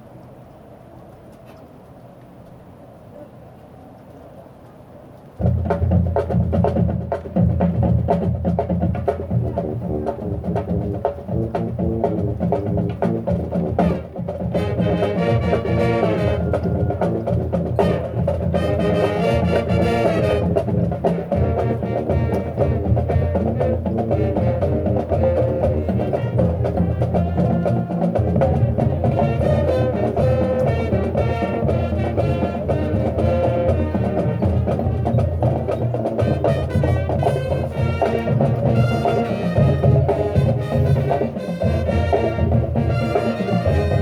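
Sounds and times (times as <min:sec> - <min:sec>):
drums and percussion: 0:05.4 - 0:44.0
marching band playing: 0:05.4 - 0:44.0
wind instruments sustained chords: 0:11.4 - 0:44.0.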